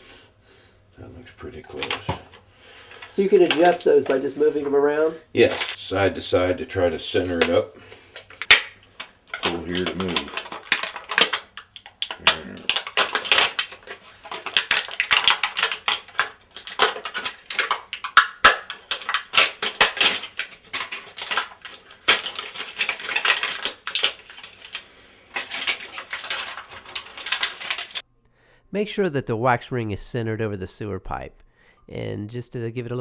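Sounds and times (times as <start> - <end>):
packaging crinkling and rustling: 1.7 - 5.8, 7.2 - 28.0.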